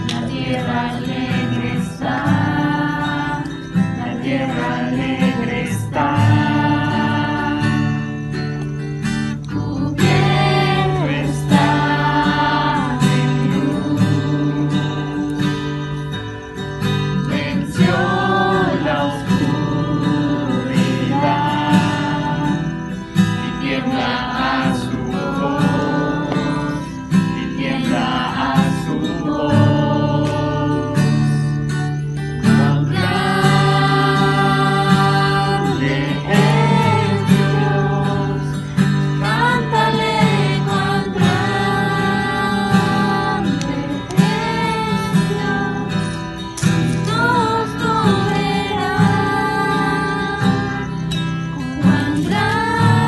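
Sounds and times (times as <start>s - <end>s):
acoustic guitar: 0.0s - 53.0s
people singing: 0.0s - 53.0s
person singing: 32.4s - 53.0s.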